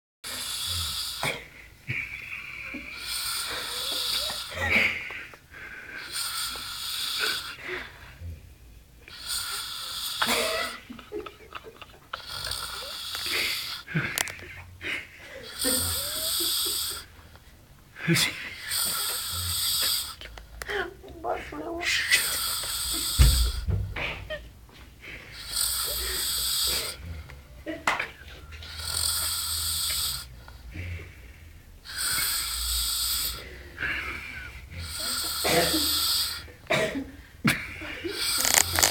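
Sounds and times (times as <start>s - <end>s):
person snoring: 0.3s - 1.4s, 2.6s - 4.7s, 6.0s - 7.6s, 9.1s - 10.9s, 12.2s - 14.3s, 15.4s - 17.1s, 18.5s - 20.2s, 25.4s - 27.3s, 28.6s - 30.9s, 31.8s - 36.5s, 38.1s - 38.9s.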